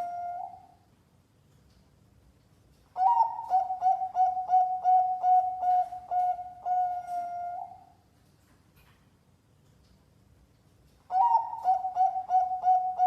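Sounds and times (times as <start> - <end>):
dove cooing: 0.0 - 0.8, 3.0 - 7.9, 11.1 - 13.0.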